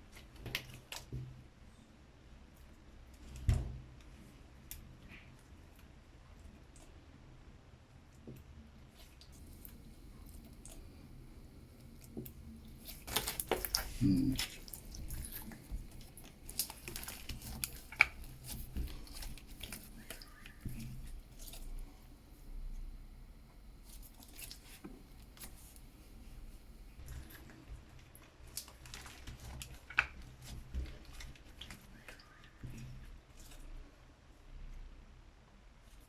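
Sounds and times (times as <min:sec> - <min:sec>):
hands squishing slime: 0:09.4 - 0:27.0.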